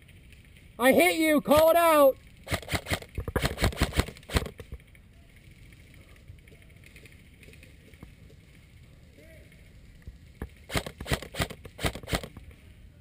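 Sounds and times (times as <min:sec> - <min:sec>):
airsoft gun rapid shots: 0:02.5 - 0:04.6, 0:10.7 - 0:12.4.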